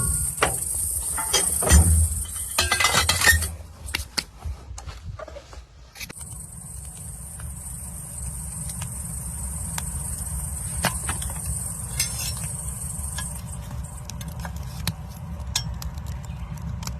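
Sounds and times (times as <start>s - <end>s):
insect drone: 0.0s - 3.5s, 6.2s - 14.8s
tool clinking and scraping in ash: 0.0s - 4.2s, 9.7s - 16.2s
low rumble: 6.2s - 16.9s.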